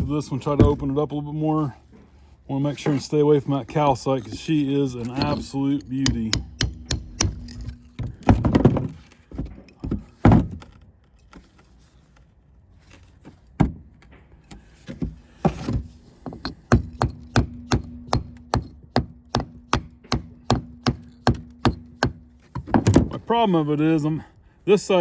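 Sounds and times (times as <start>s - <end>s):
hammer tapping metal blade: 5.1s - 7.9s.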